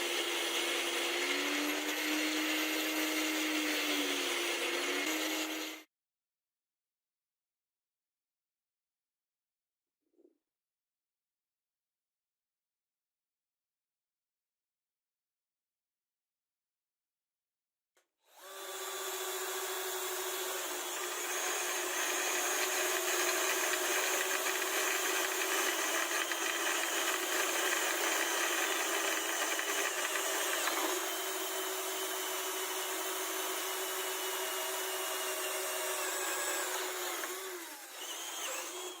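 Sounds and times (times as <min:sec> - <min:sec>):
power tool motor whining: 0:00.0 - 0:05.9, 0:18.3 - 0:39.0.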